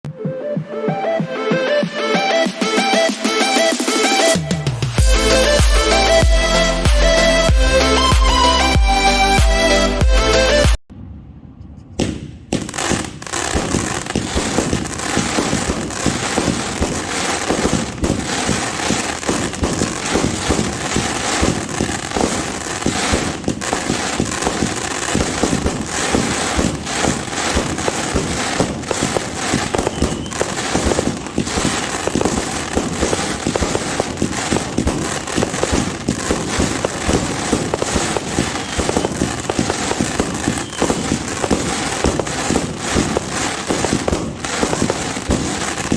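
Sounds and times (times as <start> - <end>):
fireworks cake firing rapidly: 12.0 - 45.9.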